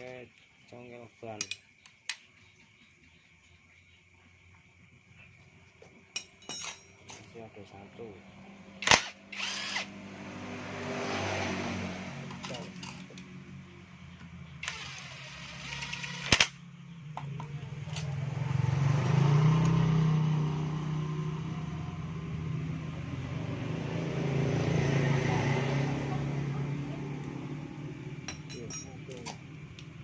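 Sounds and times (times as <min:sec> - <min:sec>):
motor humming: 0:08.8 - 0:09.9.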